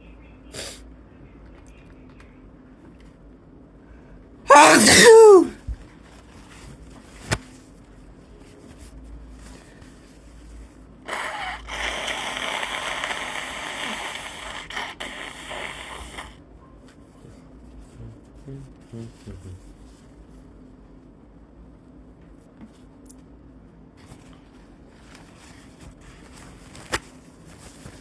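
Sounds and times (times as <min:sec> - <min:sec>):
person sneezing: 0:04.5 - 0:05.6.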